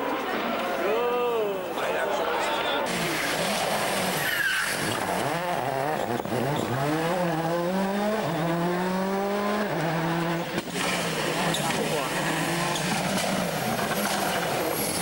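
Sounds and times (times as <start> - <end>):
tyre squeal: 2.9 - 5.2
car engine accelerating hard: 2.9 - 15.0.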